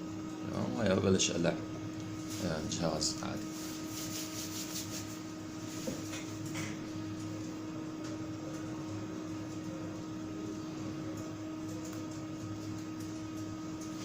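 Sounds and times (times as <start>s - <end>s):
server cooling fans humming: 0.0s - 14.0s.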